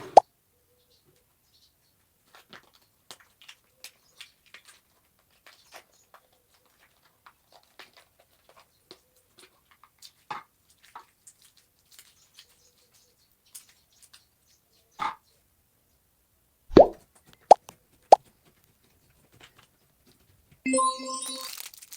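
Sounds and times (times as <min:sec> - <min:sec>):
slime squeezed by hand: 0:16.7 - 0:17.0.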